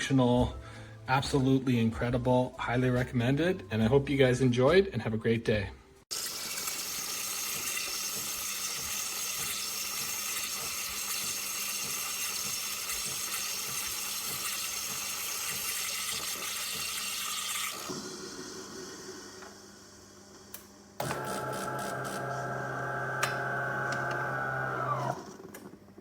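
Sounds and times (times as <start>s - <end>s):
espresso machine hissing: 6.2s - 25.4s.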